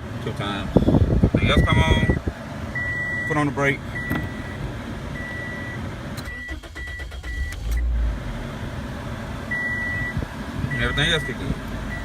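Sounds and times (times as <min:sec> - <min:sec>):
car engine starting: 0:00.0 - 0:12.0
short electronic beeps: 0:01.5 - 0:02.2, 0:02.8 - 0:03.4, 0:04.0 - 0:04.6, 0:05.2 - 0:07.6, 0:09.5 - 0:12.0.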